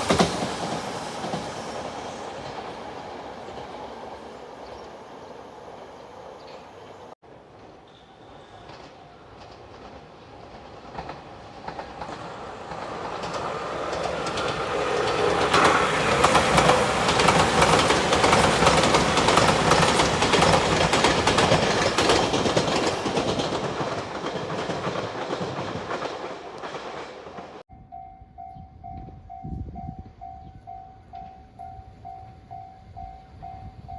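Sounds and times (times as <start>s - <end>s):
train passing: 0.0s - 33.9s
wheels clacking over rail joints: 6.4s - 27.6s.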